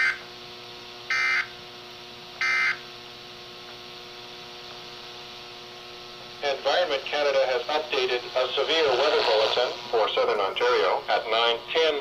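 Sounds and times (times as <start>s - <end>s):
radio hum: 6.2s - 12.0s.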